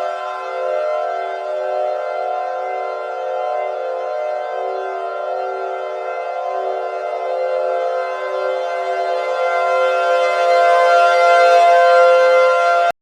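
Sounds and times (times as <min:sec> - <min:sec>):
civil defense siren: 0:00.0 - 0:13.0.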